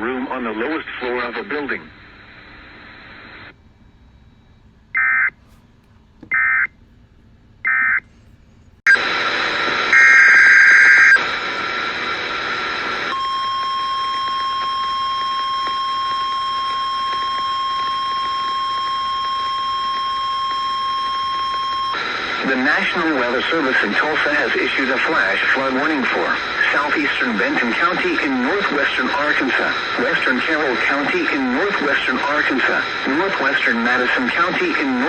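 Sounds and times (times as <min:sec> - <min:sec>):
radio hiss: 0:00.0 - 0:03.6, 0:07.6 - 0:35.0.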